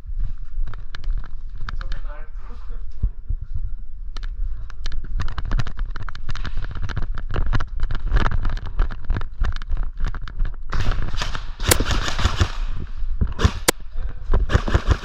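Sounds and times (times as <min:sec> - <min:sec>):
airsoft guns firing: 0:10.7 - 0:12.8.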